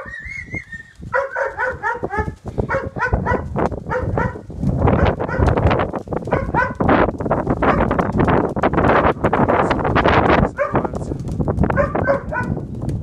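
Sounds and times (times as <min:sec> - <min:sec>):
wind buffeting microphone: 0:00.0 - 0:13.0
dog barking: 0:01.1 - 0:05.6, 0:06.3 - 0:06.9, 0:07.6 - 0:07.9, 0:10.5 - 0:11.0, 0:11.7 - 0:12.6.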